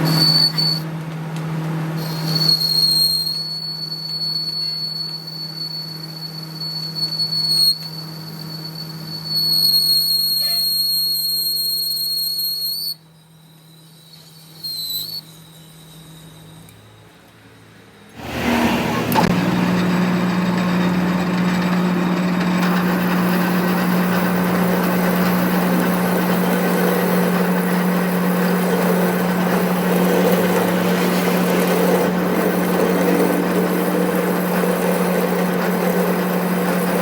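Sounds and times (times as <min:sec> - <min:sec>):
high-pitched machining squeal: 0:00.0 - 0:00.9, 0:02.0 - 0:17.2, 0:18.2 - 0:37.0
low machine hum: 0:18.2 - 0:37.0.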